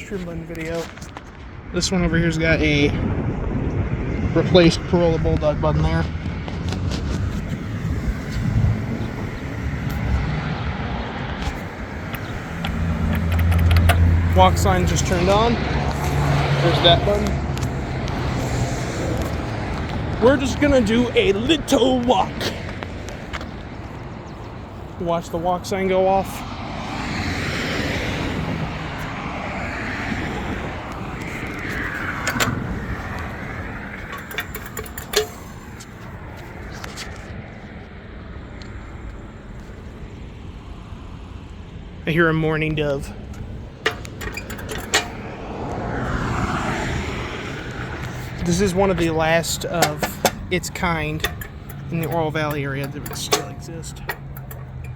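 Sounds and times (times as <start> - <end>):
vehicles passing: 0.0 - 54.9
low engine hum: 3.0 - 24.9
sharp clicks and knocks: 11.4 - 18.4, 30.9 - 36.0, 43.3 - 45.8, 47.6 - 54.9.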